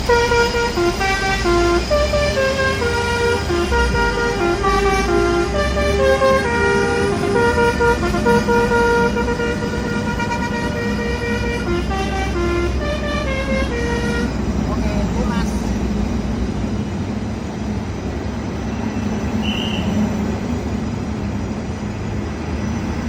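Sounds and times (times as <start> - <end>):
musical vehicle horn: 0.0 - 14.4, 19.4 - 20.0
low engine rumble: 0.0 - 23.0.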